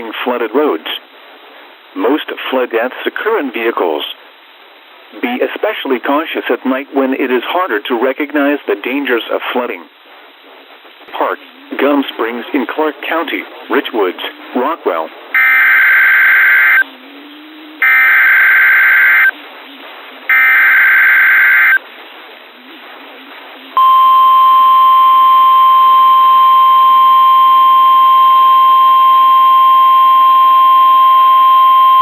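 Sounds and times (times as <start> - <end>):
steady alarm tone: 15.4 - 16.8, 17.8 - 19.3, 20.3 - 21.8, 23.8 - 32.0.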